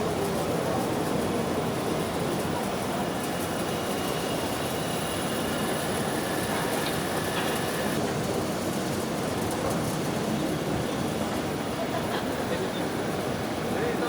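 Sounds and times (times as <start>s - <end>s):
mill motor running: 0.9s - 8.0s.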